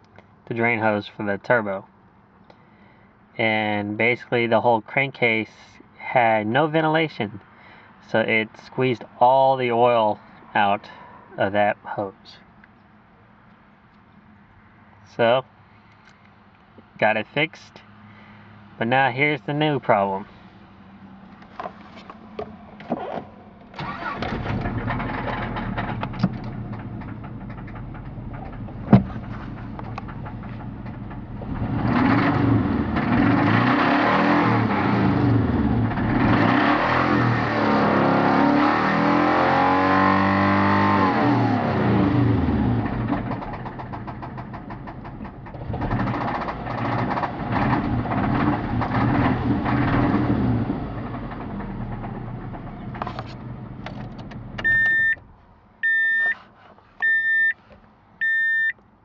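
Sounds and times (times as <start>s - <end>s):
car engine starting and revving: 22.0s - 55.4s
engine knocking: 42.9s - 50.1s.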